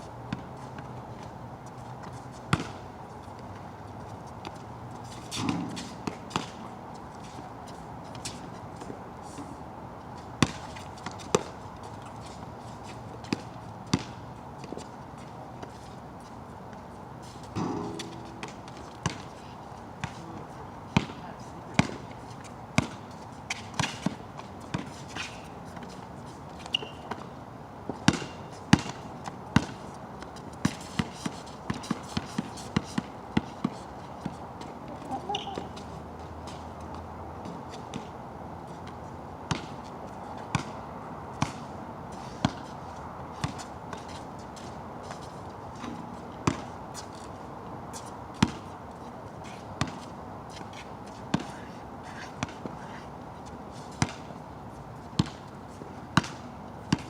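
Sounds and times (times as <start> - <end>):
basketball bouncing on wet court: 2.5 - 2.8, 5.3 - 6.6, 10.4 - 10.6, 13.3 - 14.2, 17.6 - 19.3, 21.0 - 21.2, 21.8 - 22.0, 22.8 - 24.9, 28.0 - 29.0, 39.5 - 39.8, 40.5 - 40.8, 41.4 - 41.6, 45.8 - 46.7, 48.4 - 48.6, 49.8 - 50.0, 54.0 - 54.3, 55.2 - 55.4, 56.2 - 57.0.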